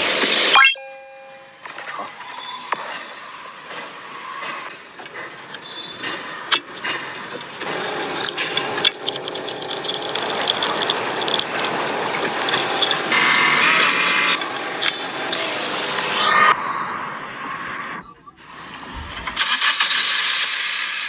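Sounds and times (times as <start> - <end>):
sharp clicks: 5.4 - 16.1
car engine starting and running: 6.8 - 16.6, 18.5 - 21.0.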